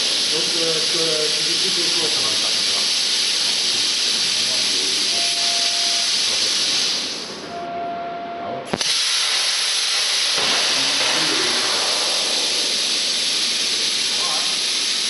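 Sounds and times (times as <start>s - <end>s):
rushing air hiss: 0.0s - 7.4s, 8.7s - 15.0s
thin high whine: 5.1s - 6.4s.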